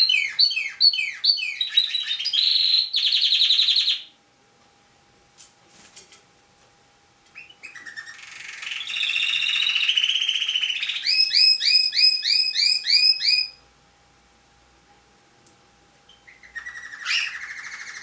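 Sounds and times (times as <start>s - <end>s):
canary singing: 0.0s - 4.1s, 7.3s - 13.6s, 16.1s - 18.0s.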